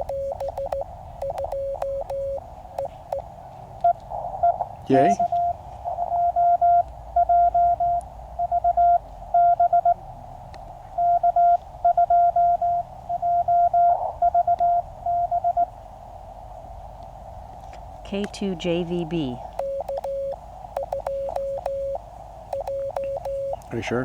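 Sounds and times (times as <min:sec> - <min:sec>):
morse code beeps: 0:00.0 - 0:03.2, 0:03.8 - 0:10.0, 0:11.0 - 0:15.7, 0:19.5 - 0:23.7
receiver hiss: 0:00.0 - 0:03.4, 0:18.1 - 0:24.0.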